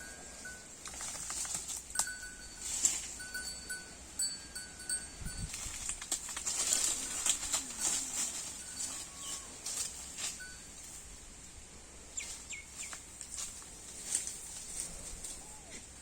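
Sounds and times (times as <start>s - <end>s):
cow chewing grass: 0.0s - 11.1s
birds chirping: 7.0s - 10.8s, 12.0s - 14.5s.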